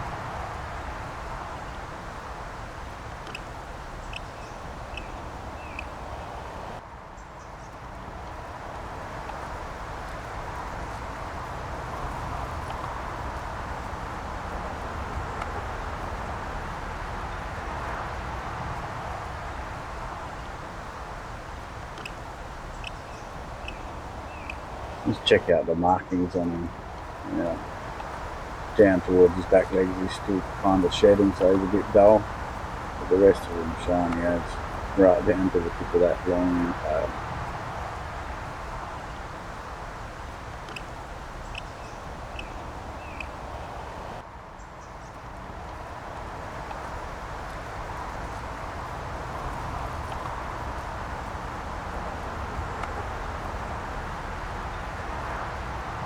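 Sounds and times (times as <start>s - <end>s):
small bird chirping: 1.4s - 8.4s, 19.4s - 37.2s, 37.9s - 45.2s
even hiss: 8.4s - 44.2s.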